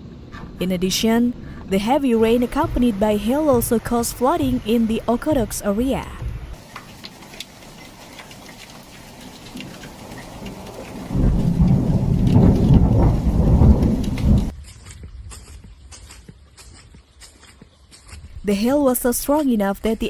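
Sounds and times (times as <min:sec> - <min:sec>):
hailstones ticking: 0:01.8 - 0:14.5
rain and hail falling: 0:02.2 - 0:14.5
rumble of thunder: 0:07.6 - 0:14.5.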